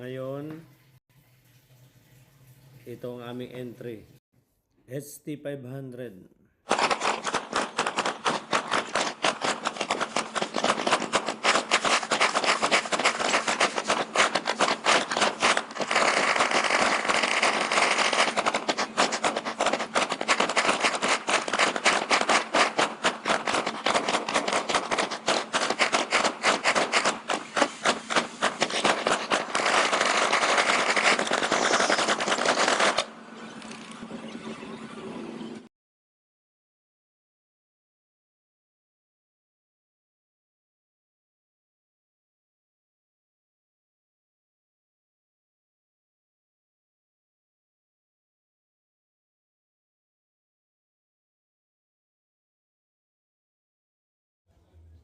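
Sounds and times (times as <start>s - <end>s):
rapid rattle of sharp bangs: 6.7s - 33.9s.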